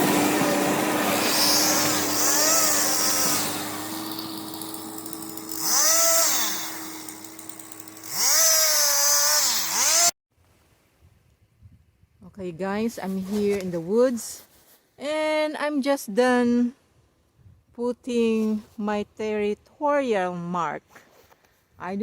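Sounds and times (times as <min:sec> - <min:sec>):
chainsaw cutting wood: 0:00.0 - 0:10.2.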